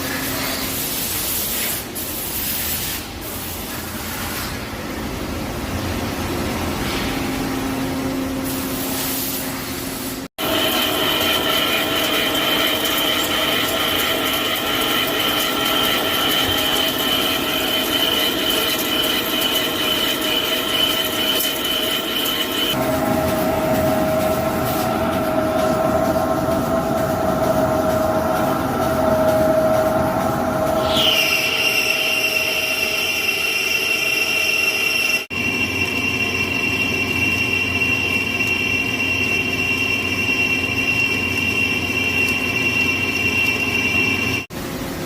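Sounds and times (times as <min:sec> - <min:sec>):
lathe high-pitched whine: 0:10.4 - 0:44.5.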